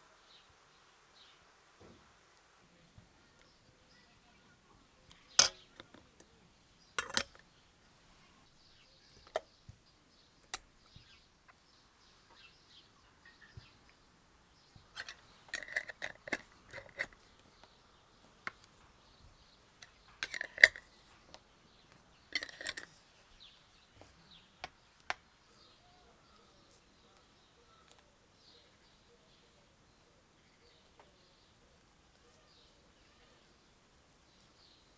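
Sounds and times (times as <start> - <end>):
faint birds chirping: 0.0 - 34.9
kitchenware clinking and knocking: 5.4 - 6.0, 7.0 - 7.4, 20.2 - 20.8, 22.4 - 22.9.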